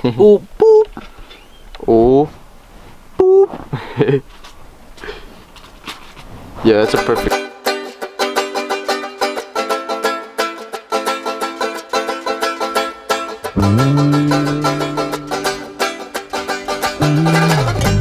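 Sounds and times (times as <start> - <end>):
plucked string tune: 7.0 - 18.0
deep sliding bass line: 13.6 - 15.9, 17.0 - 18.0.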